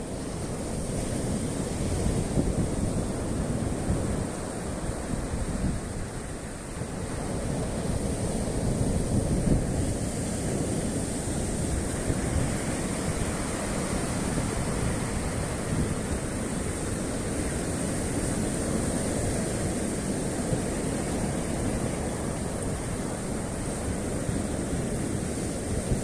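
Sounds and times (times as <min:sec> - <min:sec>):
surf washing on shore: 0:00.0 - 0:26.0
wind rumbling on microphone: 0:00.0 - 0:26.0.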